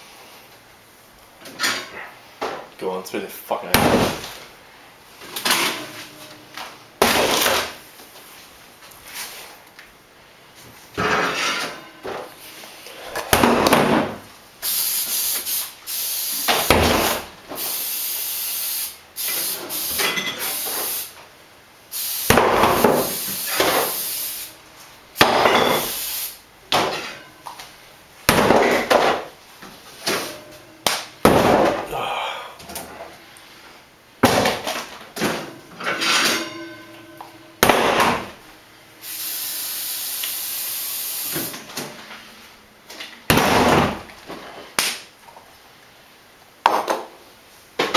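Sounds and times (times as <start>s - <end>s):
knocks and clatters of kitchenware: 11.0s - 12.3s, 13.2s - 14.2s, 20.0s - 20.5s, 25.2s - 25.9s, 26.7s - 27.6s, 28.3s - 31.9s, 34.2s - 38.4s, 43.3s - 44.6s.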